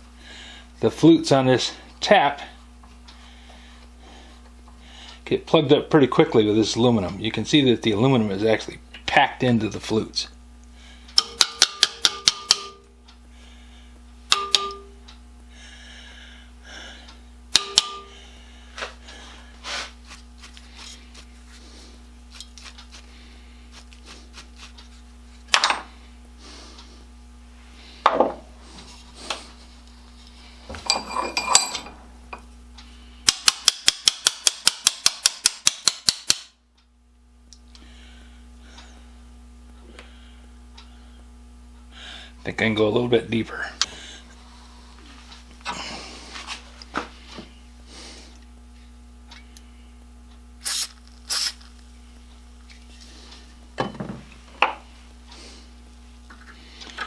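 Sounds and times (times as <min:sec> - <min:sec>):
faint steady hum: 0:00.0 - 0:57.0
sharp metallic tool clicks: 0:33.3 - 0:36.5, 0:50.6 - 0:51.6.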